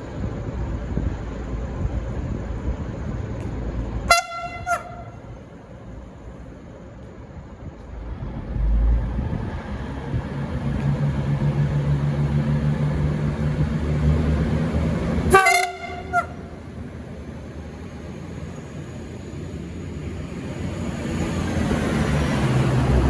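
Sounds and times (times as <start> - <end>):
train diesel engine droning: 0.0 - 23.0
train horn toots: 4.1 - 5.3, 15.3 - 16.6.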